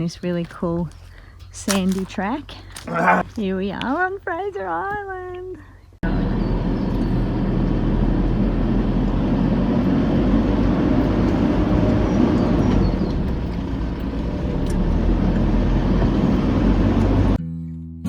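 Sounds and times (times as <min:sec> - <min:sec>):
vehicle engine and tyre noise: 0:06.0 - 0:17.4.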